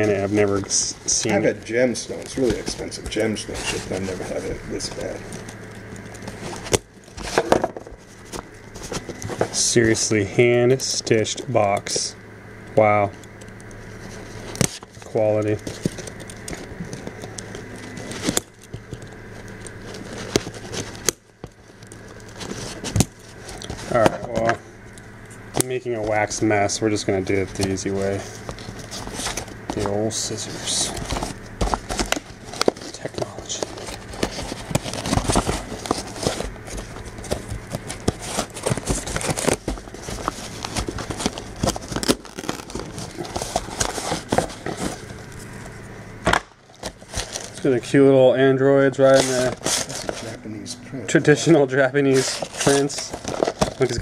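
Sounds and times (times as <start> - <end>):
cloth bag rustling and crackling: 30.8 - 45.2.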